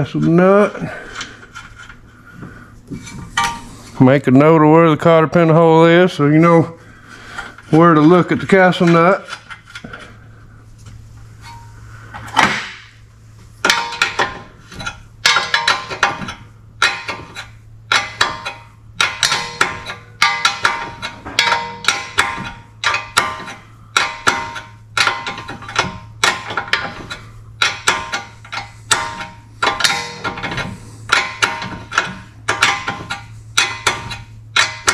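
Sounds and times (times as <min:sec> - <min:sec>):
metallic clicking and clanking of tool: 0:13.6 - 0:34.9.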